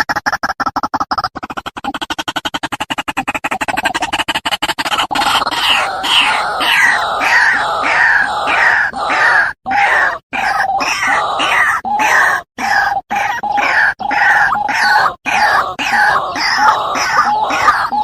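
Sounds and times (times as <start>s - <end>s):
bird clicking croaks: 0.0s - 18.0s
bird loud kwaak calls: 4.8s - 18.0s.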